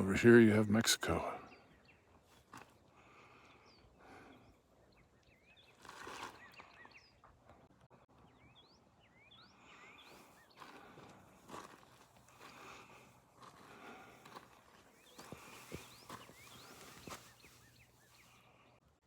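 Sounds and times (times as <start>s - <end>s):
faint birds chirping: 0.0s - 19.0s
soft noisy crunch: 2.1s - 4.2s, 5.2s - 7.8s, 10.1s - 18.8s.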